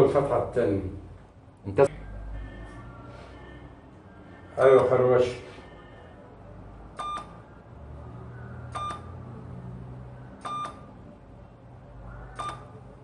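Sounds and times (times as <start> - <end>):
short electronic beeps: 7.0 - 7.4, 8.7 - 9.2, 10.4 - 10.9, 12.4 - 12.7.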